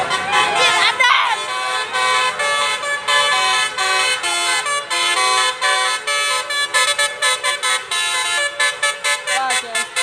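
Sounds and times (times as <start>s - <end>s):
bus multi-tone horn tune: 0.0s - 10.0s.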